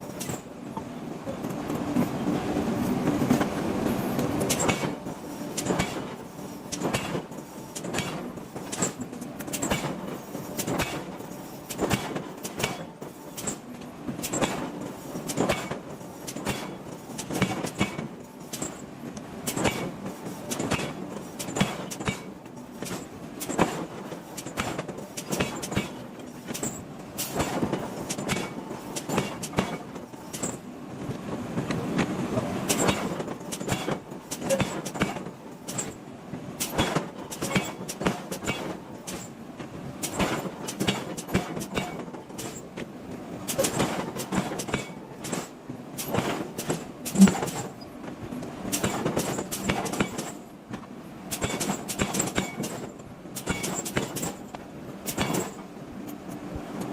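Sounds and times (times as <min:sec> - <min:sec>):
machinery noise: 0:43.5 - 0:47.9.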